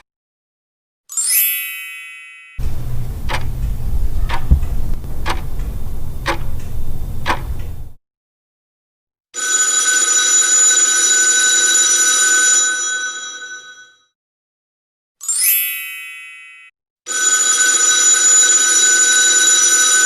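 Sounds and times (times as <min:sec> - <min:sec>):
low rumble: 0:02.6 - 0:08.0
sharp clicks: 0:02.6 - 0:08.0.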